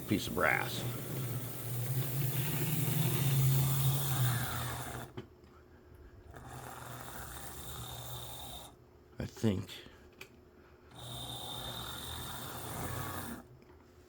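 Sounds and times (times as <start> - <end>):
small electric motor humming: 0.0 - 5.2, 6.3 - 8.8, 10.8 - 13.5.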